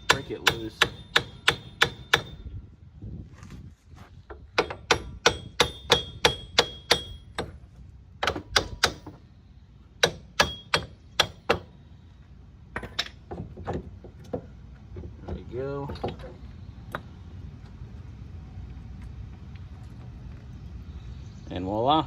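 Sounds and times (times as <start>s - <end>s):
hammer striking metal with ringing: 0.0s - 2.4s, 4.6s - 7.5s, 10.0s - 11.7s.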